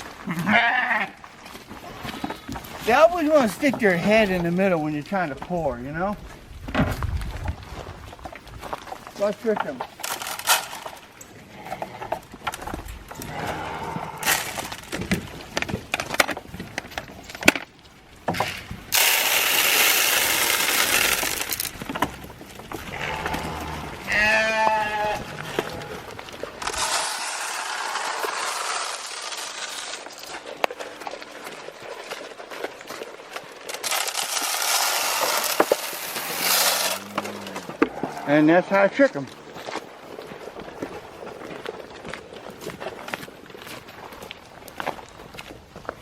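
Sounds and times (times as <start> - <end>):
sheep bleating: 0.2 - 1.2, 22.9 - 26.0.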